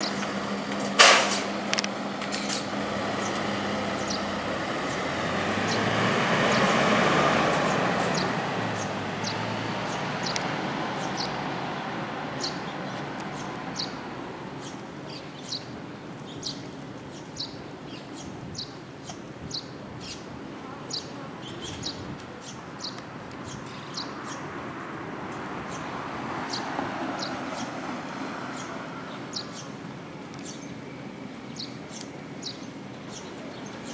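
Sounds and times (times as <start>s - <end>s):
traffic hum: 0.0s - 33.9s.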